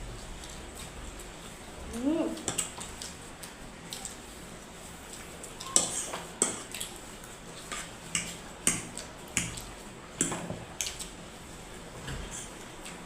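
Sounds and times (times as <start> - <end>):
cutlery clinking on plates: 5.6 - 6.7.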